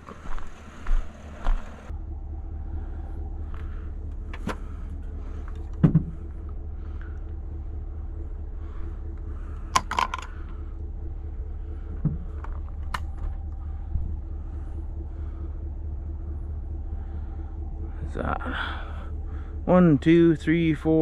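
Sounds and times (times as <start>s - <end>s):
vehicle engine humming: 0.0s - 21.0s.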